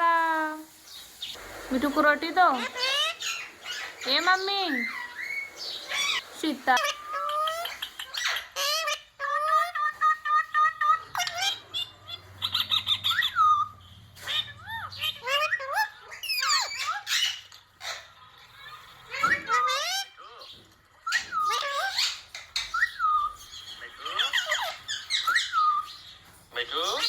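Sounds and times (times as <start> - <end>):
parakeet chirping and squawking: 0.4 - 27.0
parakeet mimicking words: 1.8 - 5.2, 5.9 - 13.6, 14.2 - 18.1
parakeet whistling: 2.5 - 20.4, 21.0 - 26.2.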